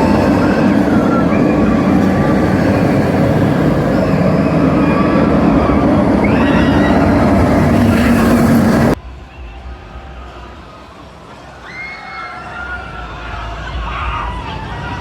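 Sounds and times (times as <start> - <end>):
high wavering tones: 0.0 - 9.0
ride train rumbling on track: 0.0 - 11.4.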